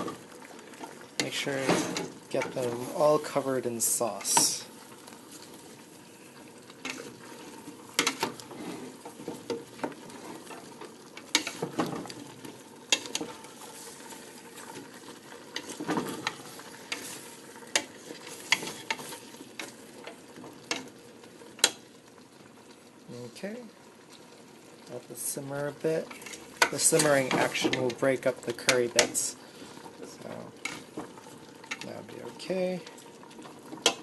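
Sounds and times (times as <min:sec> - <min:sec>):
sauce sizzling: 0:00.0 - 0:34.0
spatula scraping a pot: 0:06.8 - 0:12.3, 0:12.9 - 0:19.8.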